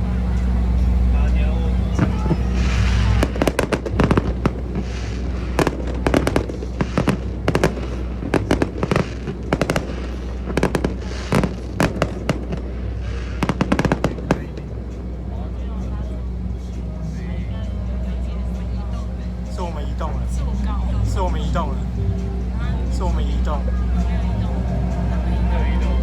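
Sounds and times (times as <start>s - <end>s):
low rumble: 0.0s - 26.0s
fireworks bangs and crackles: 0.5s - 16.7s.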